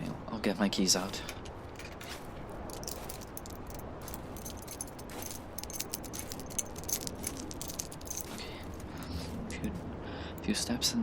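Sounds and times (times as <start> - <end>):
keys jangling: 1.7 - 9.2.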